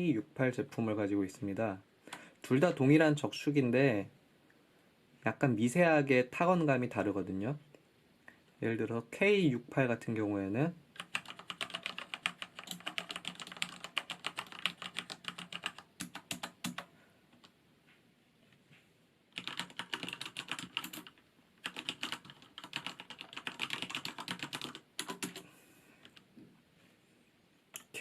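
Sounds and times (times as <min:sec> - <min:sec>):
fast typing on mechanical keyboard: 0:11.0 - 0:16.9, 0:19.4 - 0:26.2.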